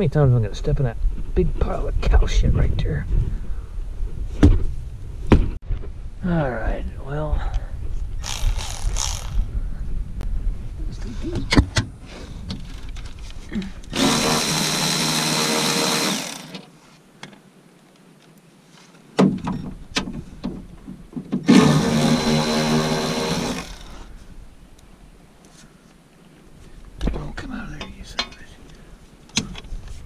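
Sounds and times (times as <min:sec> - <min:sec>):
power drill running: 0:08.2 - 0:09.4, 0:13.9 - 0:16.6, 0:21.5 - 0:24.1.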